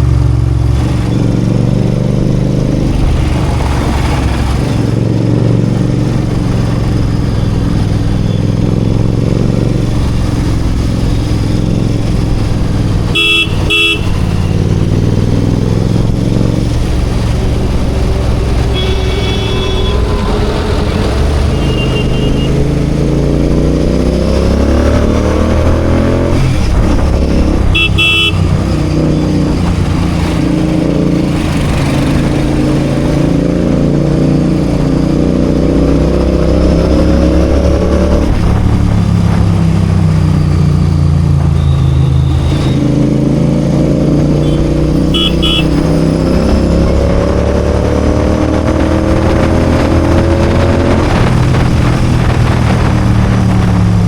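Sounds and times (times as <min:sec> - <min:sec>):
city traffic: 0:00.0 - 0:54.0
motorcycle engine revving: 0:00.0 - 0:54.0
vehicle horns honking: 0:13.1 - 0:14.7, 0:18.6 - 0:22.7, 0:27.6 - 0:28.6, 0:41.5 - 0:42.8, 0:44.4 - 0:46.1.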